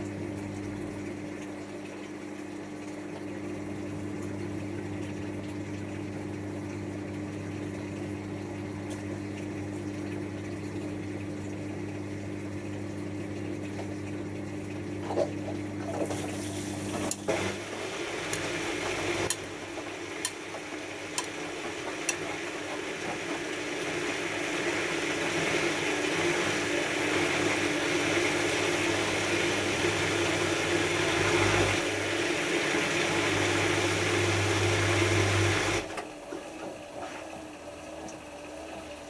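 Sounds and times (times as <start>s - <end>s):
water filling washing machine: 0.0s - 39.0s.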